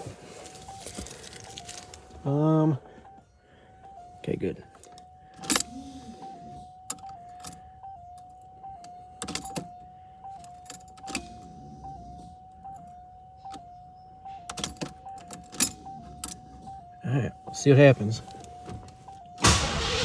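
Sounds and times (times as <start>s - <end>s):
electric fuel pump whining: 19.4s - 20.0s.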